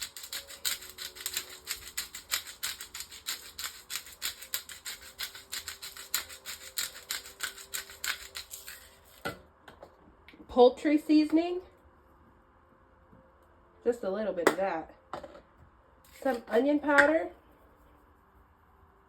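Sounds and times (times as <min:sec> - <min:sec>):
pepper shaker rattling: 0:00.0 - 0:09.2.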